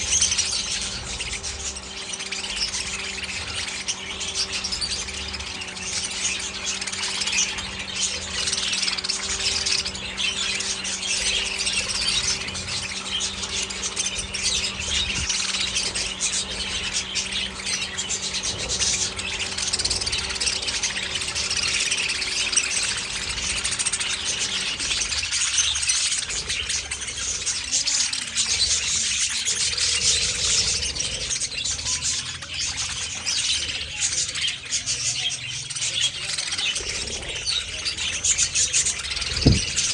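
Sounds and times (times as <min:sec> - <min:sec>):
steady low hum: 0:00.0 - 0:27.8, 0:36.9 - 0:39.9
budgerigars chirping and squawking: 0:00.0 - 0:39.9.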